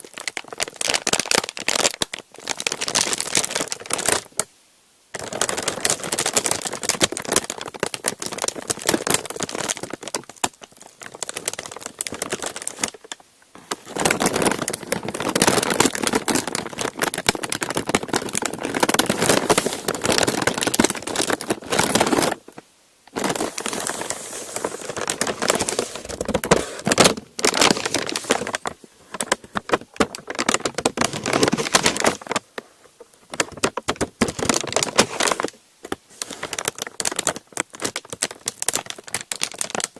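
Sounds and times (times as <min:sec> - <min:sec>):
parchment paper crinkling: 0:00.0 - 0:04.5, 0:05.2 - 0:39.9.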